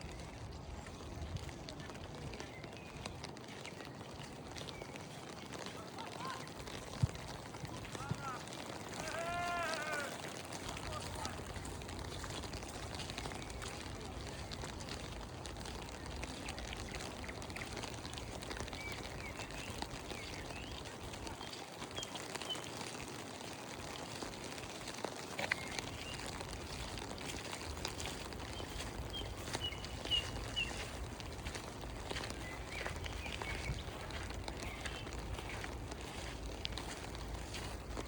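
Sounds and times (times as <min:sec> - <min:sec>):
steady rain: 0:00.0 - 0:38.0.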